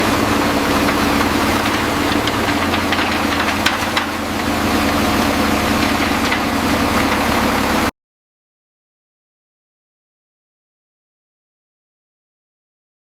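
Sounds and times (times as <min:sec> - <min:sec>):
pump engine running: 0:00.0 - 0:07.9.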